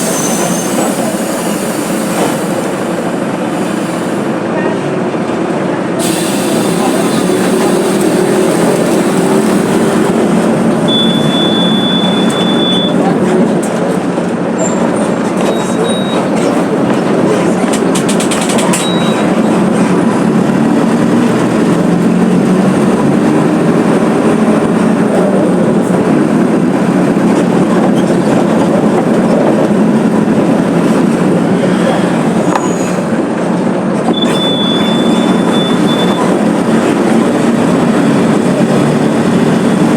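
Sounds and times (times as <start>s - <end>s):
bus diesel engine running: 0.0s - 39.9s
road noise: 0.0s - 39.9s
short high-pitched beeps: 10.9s - 13.0s, 34.2s - 36.2s.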